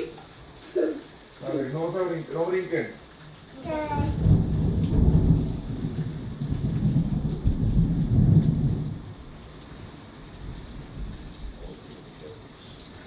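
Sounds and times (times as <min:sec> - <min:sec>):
steady rain hiss: 0:00.0 - 0:13.0
thunder rumbling: 0:03.3 - 0:13.0.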